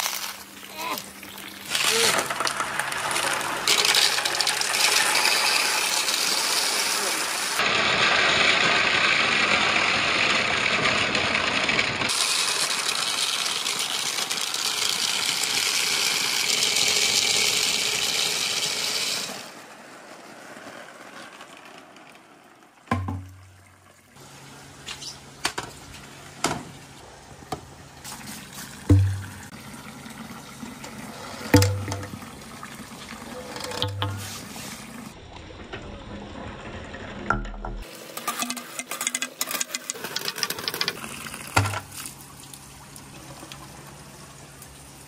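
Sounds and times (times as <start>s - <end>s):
marbles rushing down marble run: 1.7s - 19.3s, 37.8s - 41.8s.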